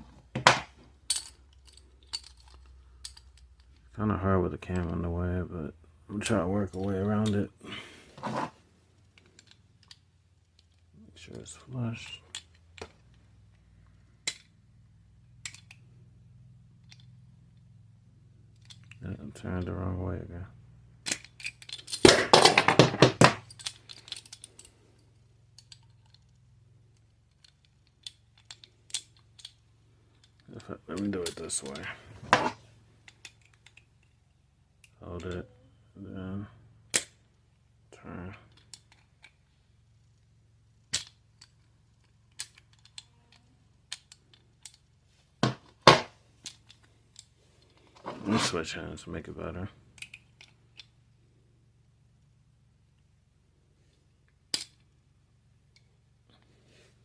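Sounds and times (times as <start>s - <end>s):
metal tools clicking and clinking: 0.4s - 3.8s, 21.1s - 24.7s, 31.2s - 32.6s, 45.4s - 48.5s.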